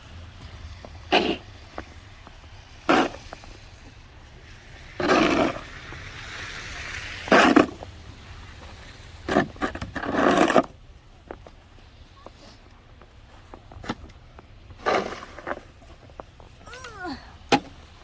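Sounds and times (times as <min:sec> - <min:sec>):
snow scraped off a car: 0:00.0 - 0:12.6, 0:14.7 - 0:16.5.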